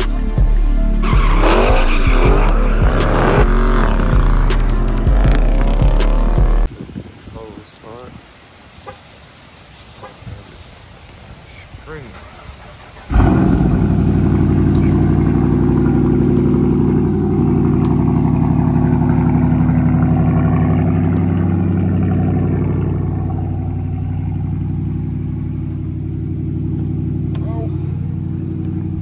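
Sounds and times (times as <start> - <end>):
car engine idling: 0.8 - 6.7, 12.2 - 29.0.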